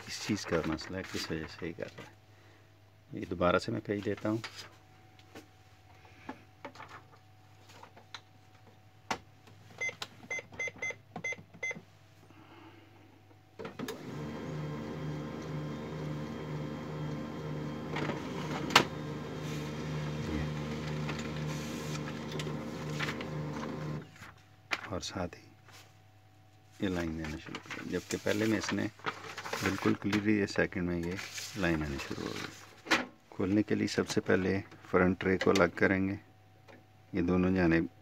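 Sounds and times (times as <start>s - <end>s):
printer motor and gears pulsing: 14.0s - 24.0s.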